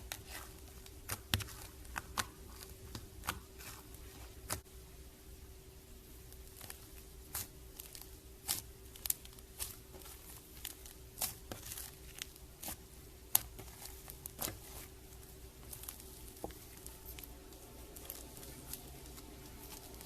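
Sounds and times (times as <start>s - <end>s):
faint steady hum: 0.0s - 20.0s
slime crackling and popping: 6.4s - 14.9s.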